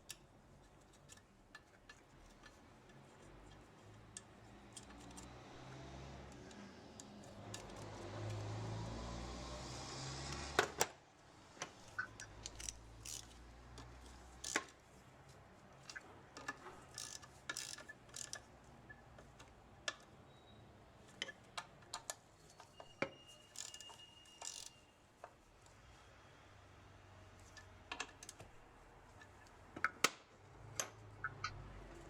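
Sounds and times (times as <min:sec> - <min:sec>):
metal parts clicking: 0:12.0 - 0:14.8, 0:15.8 - 0:18.5, 0:21.2 - 0:24.9.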